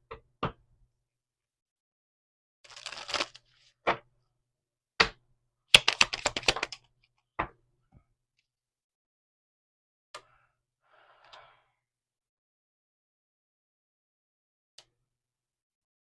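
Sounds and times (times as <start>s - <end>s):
cards rustling: 2.7s - 3.6s, 5.8s - 6.8s
rattling clicks of cards: 5.8s - 6.8s.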